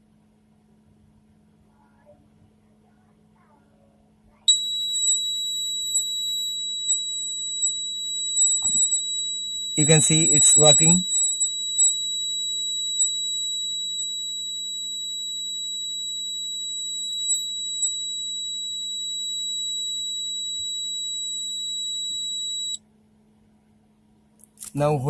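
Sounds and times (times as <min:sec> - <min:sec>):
piezo buzzer high-pitched tone: 0:04.5 - 0:22.8.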